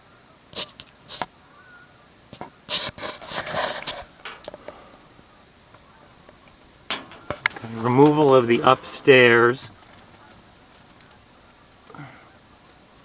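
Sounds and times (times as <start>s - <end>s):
rustling and scraping: 2.7s - 11.9s
sharp clicks and knocks: 3.8s - 5.0s, 6.3s - 11.1s.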